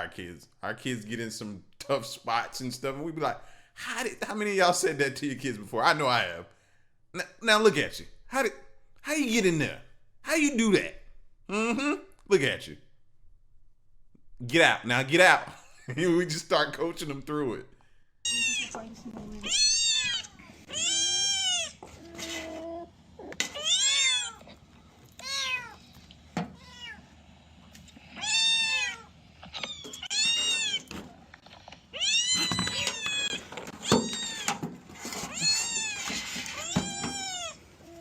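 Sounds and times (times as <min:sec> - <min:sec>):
kitten meowing in distress: 0:19.4 - 0:21.7.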